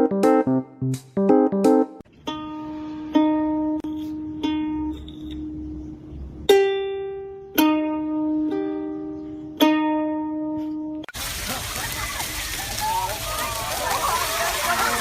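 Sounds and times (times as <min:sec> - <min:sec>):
plucked string notes: 0:00.0 - 0:11.2.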